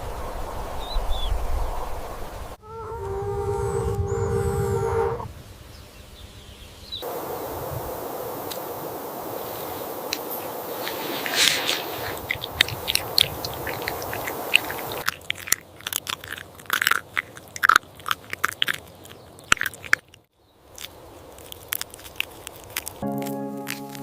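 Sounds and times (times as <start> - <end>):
crisp crunching: 10.8 - 24.0
background music: 23.0 - 24.0.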